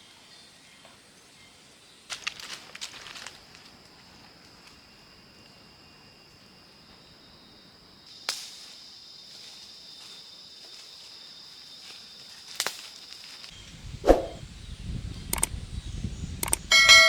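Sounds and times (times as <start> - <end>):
high insect drone: 2.9 - 13.6.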